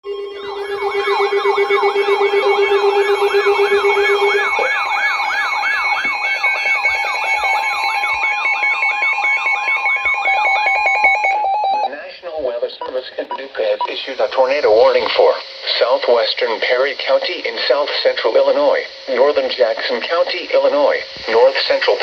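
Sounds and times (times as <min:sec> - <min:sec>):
fast falling siren sweeps: 0:00.0 - 0:11.9
steady electronic alert tones: 0:00.0 - 0:12.0, 0:12.8 - 0:15.1.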